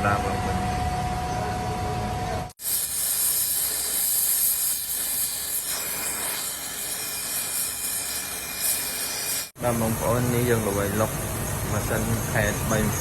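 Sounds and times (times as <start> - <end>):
steady high hiss: 2.6 - 13.0.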